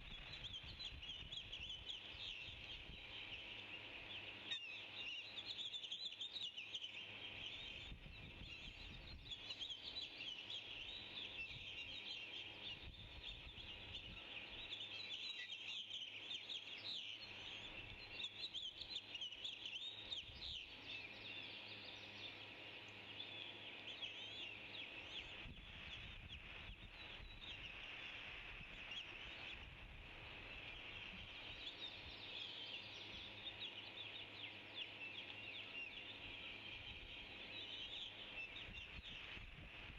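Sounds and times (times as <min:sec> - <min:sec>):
birds chirping: 0:00.0 - 0:39.9
steady high hiss: 0:21.4 - 0:39.9.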